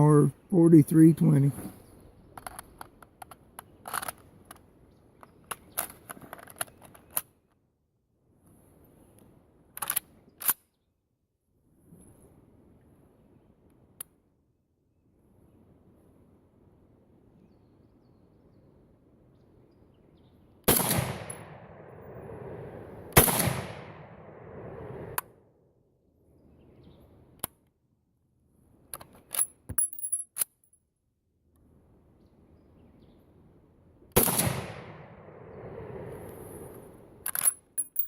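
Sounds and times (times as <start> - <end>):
metallic clicks of rifle action: 2.3 - 7.3, 9.7 - 10.7, 28.9 - 30.8, 37.2 - 38.0
rifle shots with echo: 20.7 - 22.5, 23.1 - 25.2, 34.2 - 36.1.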